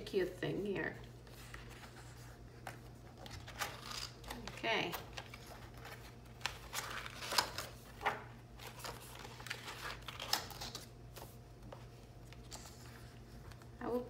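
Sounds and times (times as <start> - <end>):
paper pages turning: 1.2 - 13.7.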